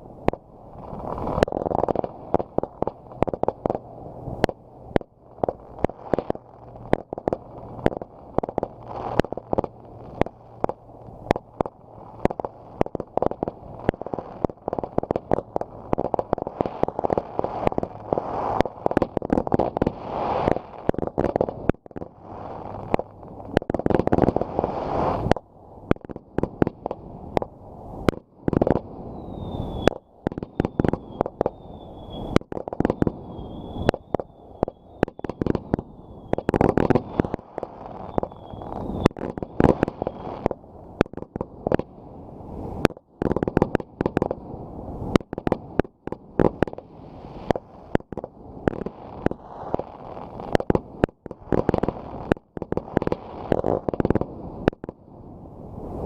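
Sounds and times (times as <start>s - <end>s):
fireworks bangs and crackling: 0.0s - 55.0s
high falling whistles: 29.0s - 37.2s, 38.0s - 40.4s.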